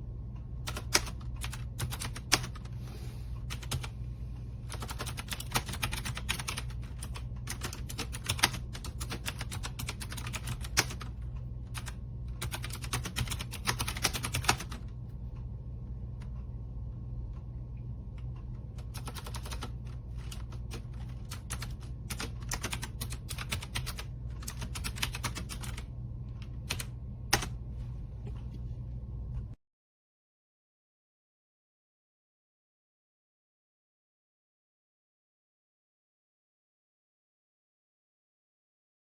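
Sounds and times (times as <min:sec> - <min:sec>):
steady low hum: 0:00.0 - 0:29.6
clicky keyboard typing: 0:00.6 - 0:02.8, 0:03.4 - 0:03.9, 0:04.6 - 0:15.2, 0:18.2 - 0:27.6.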